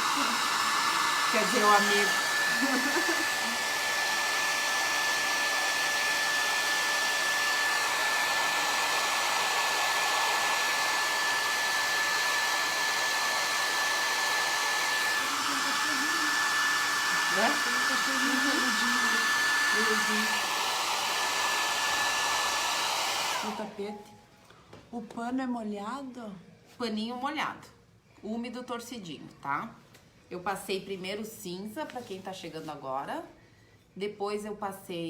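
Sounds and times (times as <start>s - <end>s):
hair dryer blowing: 0.0s - 23.9s.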